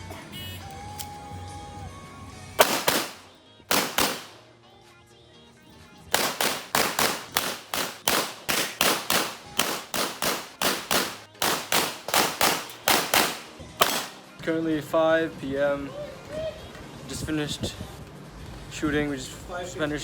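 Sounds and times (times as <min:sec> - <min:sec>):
gunshots: 0:02.6 - 0:04.4, 0:06.1 - 0:14.2.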